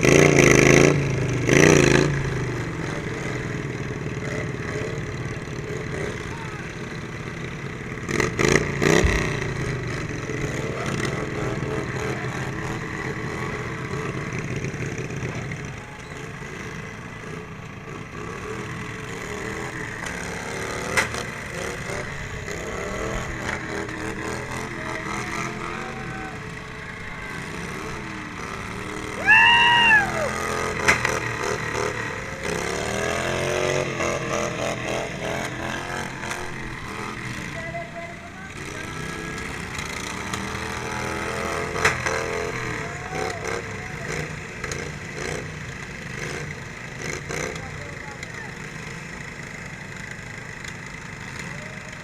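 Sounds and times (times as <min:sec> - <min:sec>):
lawn mower engine revving: 0:00.0 - 0:52.0
loud high call: 0:29.0 - 0:30.8.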